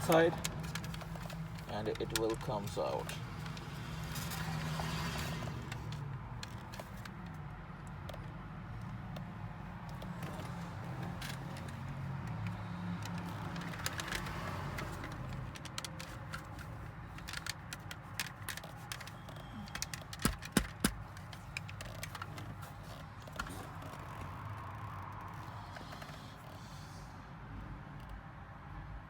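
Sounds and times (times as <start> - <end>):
plastic switch clicks and scrapes: 8.9 - 26.6.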